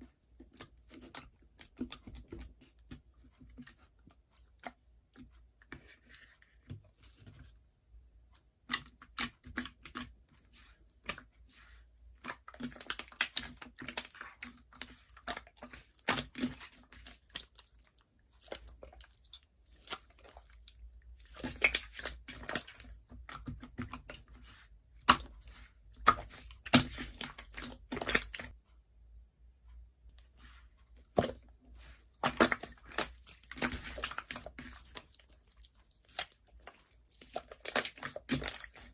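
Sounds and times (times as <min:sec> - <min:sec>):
slime crackling and popping: 0:21.4 - 0:23.9.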